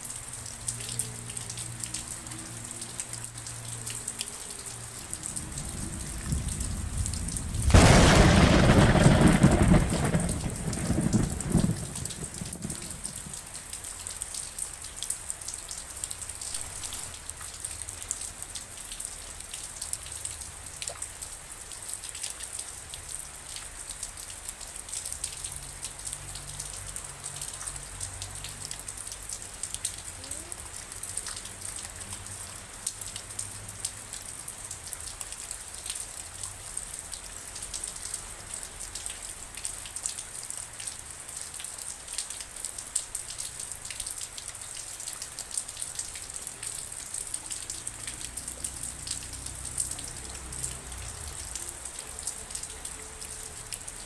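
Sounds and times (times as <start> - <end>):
rain drops ticking: 0.0 - 54.0
thunder rumble: 4.7 - 13.7.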